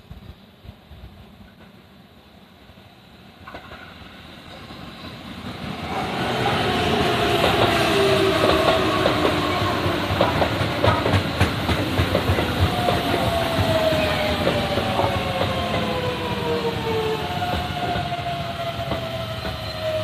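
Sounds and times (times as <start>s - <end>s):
electric train passing: 0.2s - 20.0s
wheels clicking over rail joints: 8.4s - 16.2s.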